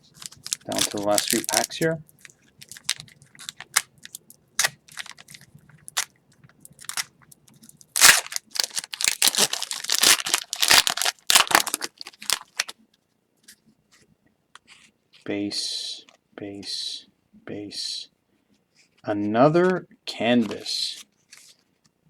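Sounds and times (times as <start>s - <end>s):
wrapper crinkling and tearing: 0.0s - 12.8s.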